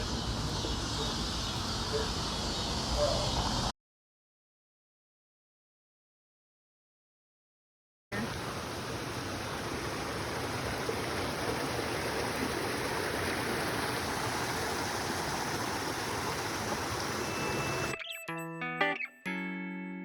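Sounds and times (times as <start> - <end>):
flowing water rushing: 8.1 - 18.0.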